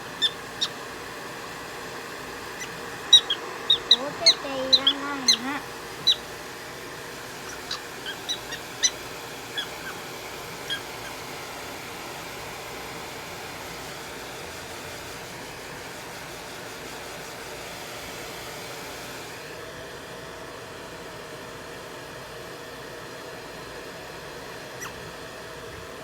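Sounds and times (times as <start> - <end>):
prairie dog squeaks: 0.0 - 0.9, 2.4 - 6.4, 7.0 - 11.2, 24.6 - 26.0.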